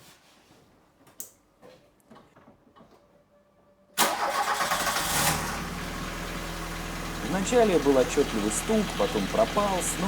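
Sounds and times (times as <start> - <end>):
car engine starting and idling: 4.0 - 10.0.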